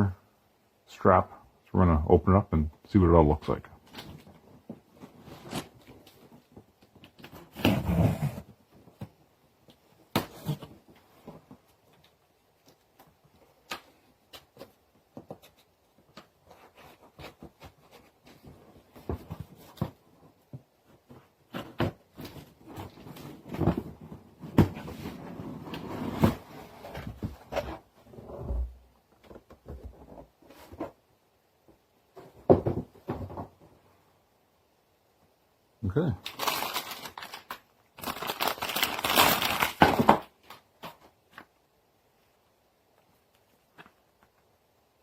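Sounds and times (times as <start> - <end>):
cardboard rustling and scraping: 3.8 - 9.2, 10.0 - 12.0, 13.9 - 31.1
clicks and knocks of packaging: 36.3 - 41.5.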